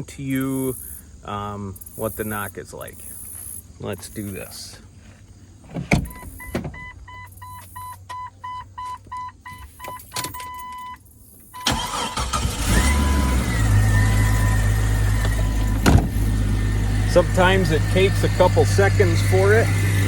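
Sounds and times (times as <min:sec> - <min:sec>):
car engine cranking and idling: 0:04.8 - 0:20.0
vehicle warning chime beeping: 0:06.0 - 0:20.0.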